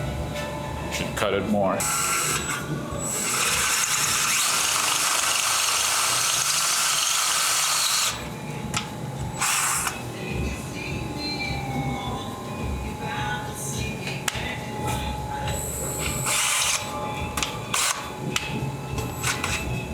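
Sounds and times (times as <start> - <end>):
power drill drilling into aluminium: 1.8 - 8.2, 9.4 - 10.0, 16.1 - 16.9.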